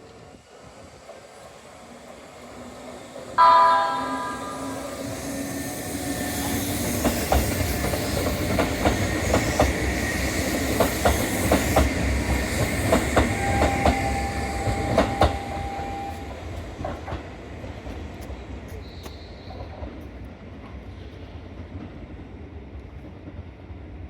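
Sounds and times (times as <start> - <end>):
train wheels clicking over rail joints: 5.4 - 20.3.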